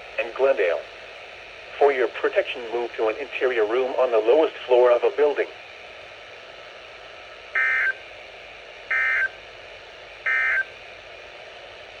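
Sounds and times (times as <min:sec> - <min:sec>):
faint radio hiss: 0:00.0 - 0:12.0
digital data bursts: 0:07.6 - 0:08.0, 0:08.9 - 0:09.4, 0:10.3 - 0:10.7.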